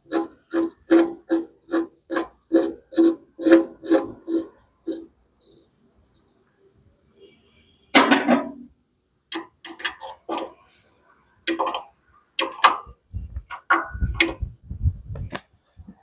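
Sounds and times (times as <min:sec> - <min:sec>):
hand tools clicking and knocking: 0:09.3 - 0:10.6, 0:11.5 - 0:14.5.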